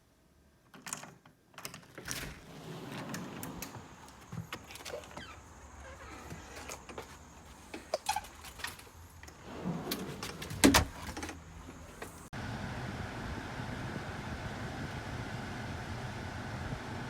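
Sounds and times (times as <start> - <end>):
car driving rumble and hiss: 9.0 - 17.0.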